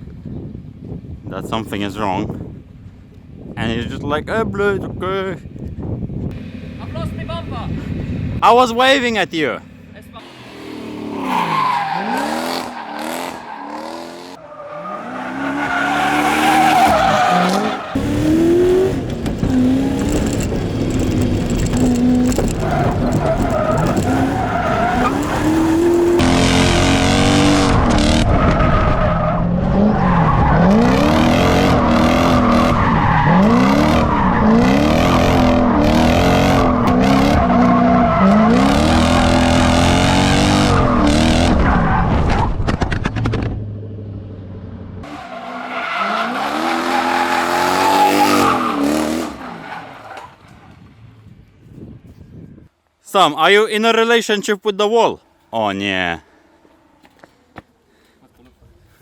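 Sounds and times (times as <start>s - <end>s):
car engine revving: 10.2s - 44.4s
tyres squealing: 14.4s - 26.2s.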